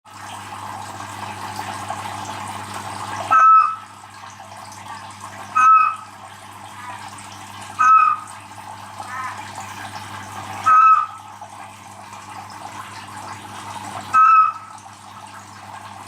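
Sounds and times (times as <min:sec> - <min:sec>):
frog croaking: 0:03.3 - 0:03.8, 0:05.6 - 0:06.0, 0:07.8 - 0:08.3, 0:10.6 - 0:11.2, 0:14.2 - 0:14.7.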